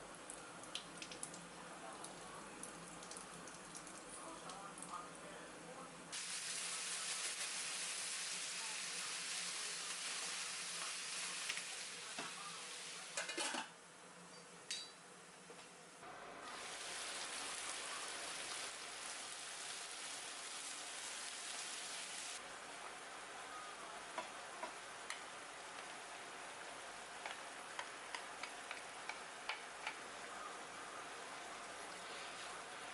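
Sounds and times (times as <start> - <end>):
food sizzling in a frying pan: 6.1 - 13.6, 16.4 - 22.4.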